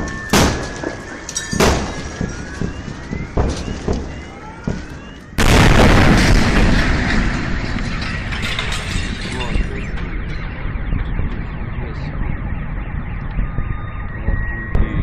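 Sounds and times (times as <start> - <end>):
rising wails: 0.0 - 5.4
distant explosion booms: 0.0 - 15.0
loud continuous roar: 4.8 - 15.0.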